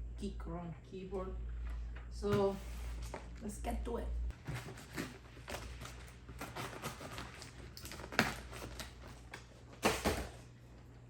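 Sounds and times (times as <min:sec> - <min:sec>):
packaging rustling: 0:04.4 - 0:10.4.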